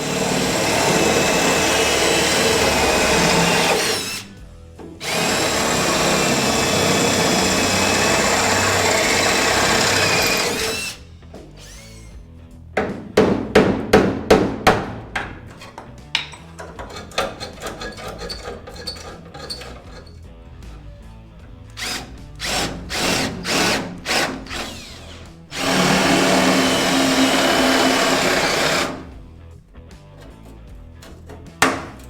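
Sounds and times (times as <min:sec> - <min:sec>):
power drill running: 0:00.0 - 0:04.4, 0:05.0 - 0:12.2, 0:21.7 - 0:29.1
sharp knocks on metal: 0:12.8 - 0:17.4, 0:31.2 - 0:32.0
rattling tool noise: 0:15.5 - 0:29.1, 0:30.1 - 0:32.0.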